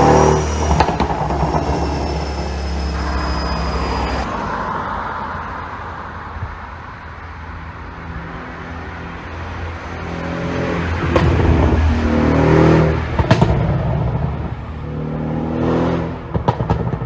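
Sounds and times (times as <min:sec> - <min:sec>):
exhaust cracks: 0:00.0 - 0:04.7
car engine pulling under throttle: 0:00.0 - 0:05.7, 0:09.4 - 0:17.0
road noise: 0:00.0 - 0:17.0.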